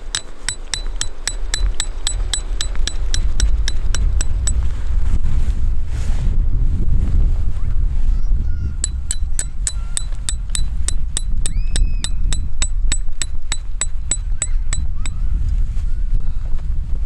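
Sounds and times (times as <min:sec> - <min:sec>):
fast sharp ticking clicks: 0:00.0 - 0:04.7, 0:08.8 - 0:15.2
wind buffeting microphone: 0:03.1 - 0:17.0.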